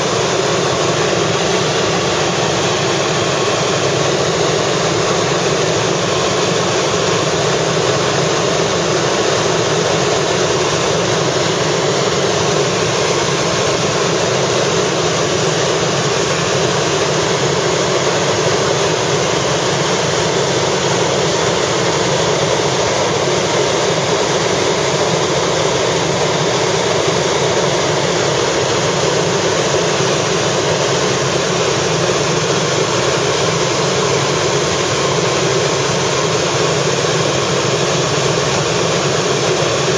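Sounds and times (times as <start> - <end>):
helicopter engine and rotor drone: 0.0 - 39.9.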